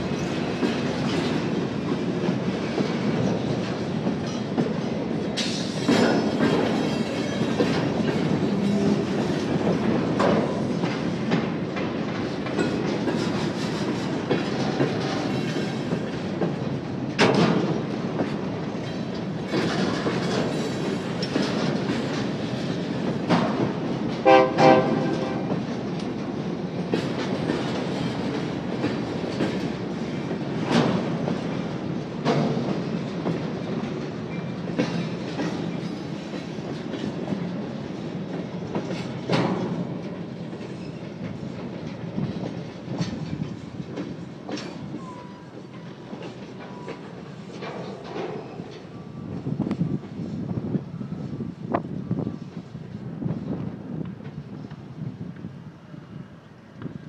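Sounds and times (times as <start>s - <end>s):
train couplers clanking: 0.0s - 54.5s
train wheels rumbling: 0.0s - 57.0s
train horn blast: 24.2s - 25.5s.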